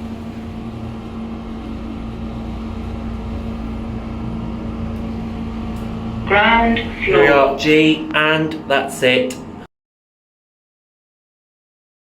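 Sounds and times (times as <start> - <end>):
low rumble: 0.0 - 8.2
lift drive humming: 0.0 - 8.7.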